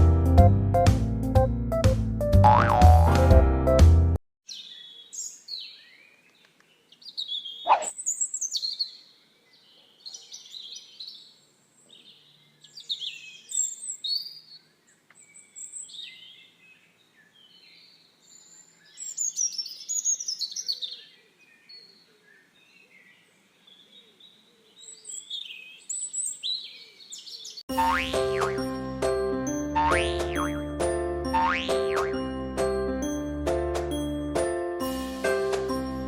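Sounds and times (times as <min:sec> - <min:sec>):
bird chirping: 0:04.5 - 0:27.7.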